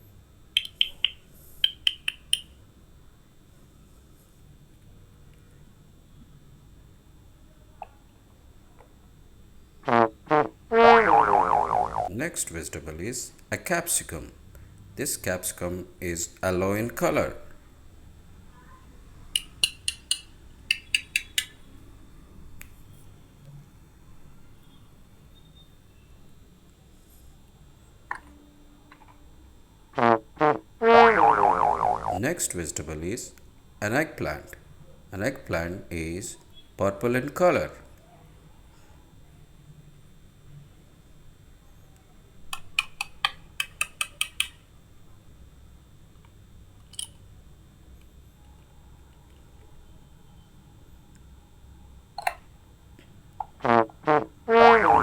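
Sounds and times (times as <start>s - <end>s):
toy knife clicking and tapping wood: 19.4s - 21.5s.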